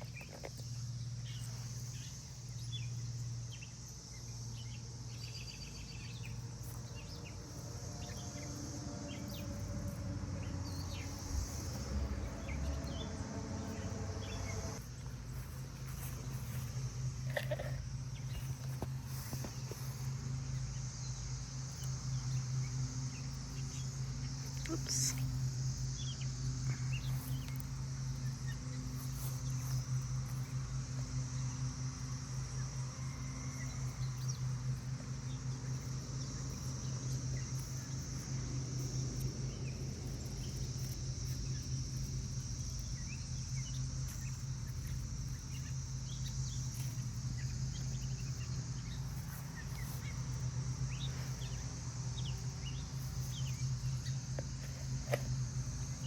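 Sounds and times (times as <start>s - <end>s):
bird chirps: 0.0s - 30.6s
high insect drone: 0.0s - 56.0s
steady low hum: 0.0s - 56.0s.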